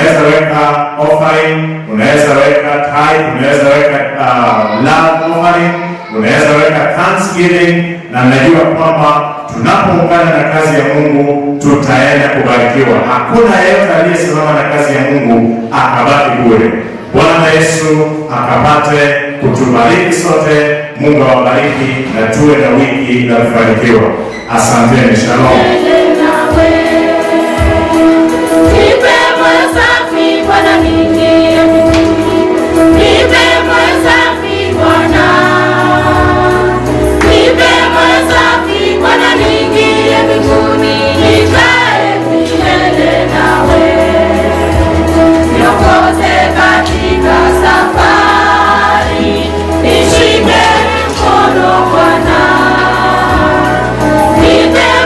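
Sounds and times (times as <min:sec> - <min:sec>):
choir singing a gospel song: 0:00.0 - 0:55.0
instrumental backing with bass line: 0:24.0 - 0:55.0.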